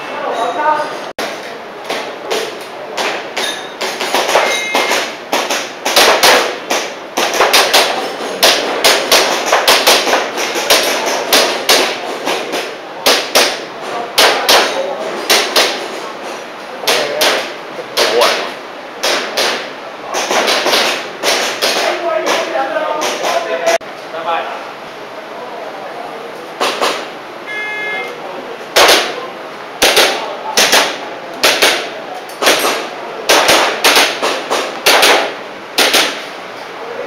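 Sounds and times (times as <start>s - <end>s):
airsoft pistol shots: 4.2s - 11.9s, 28.8s - 29.2s, 29.8s - 36.3s.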